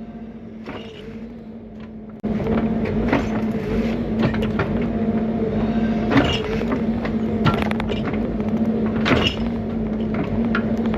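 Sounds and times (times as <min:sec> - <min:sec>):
excavator diesel engine running: 0:00.0 - 0:10.9
knocks and clatter: 0:01.8 - 0:04.9, 0:06.1 - 0:10.9.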